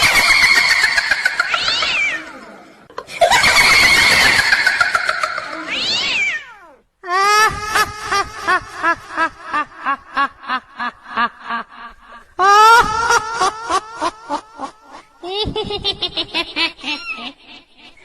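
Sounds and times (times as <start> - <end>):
pulsing evil cackle: 0.0 - 6.2
high-pitched wailing shrieks: 0.0 - 6.8.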